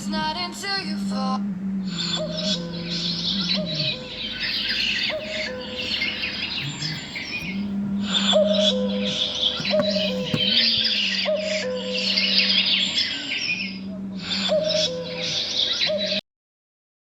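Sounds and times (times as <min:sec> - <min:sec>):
low drone tone: 0:01.0 - 0:16.2
birds chirping and calling: 0:01.9 - 0:16.2.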